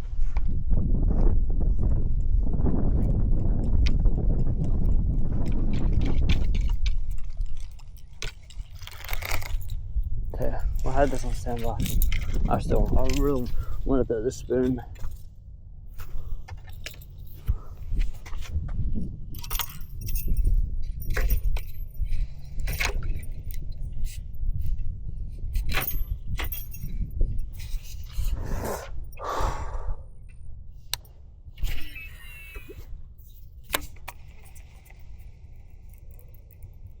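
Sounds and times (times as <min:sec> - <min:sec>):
steady low rumble: 0:00.0 - 0:37.0
fishing tackle clinking: 0:19.3 - 0:24.1.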